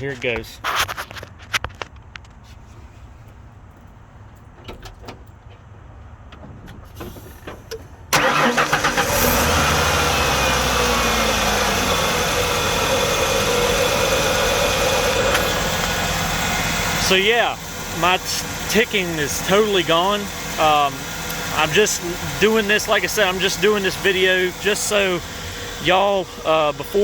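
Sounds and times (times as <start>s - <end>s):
engine cranking and starting: 8.1s - 27.0s
engine idling: 8.2s - 27.0s.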